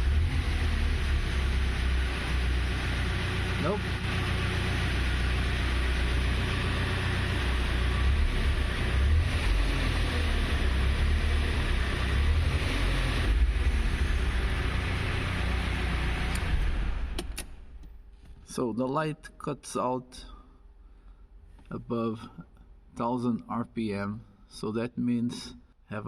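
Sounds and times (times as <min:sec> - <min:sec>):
car engine idling and revving: 0:00.0 - 0:18.2.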